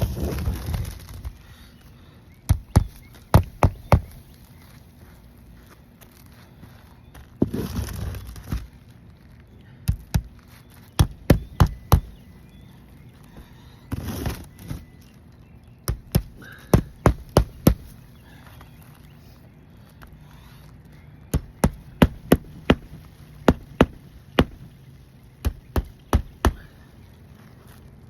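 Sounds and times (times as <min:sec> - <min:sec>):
hammer striking nails: 0:21.3 - 0:24.6.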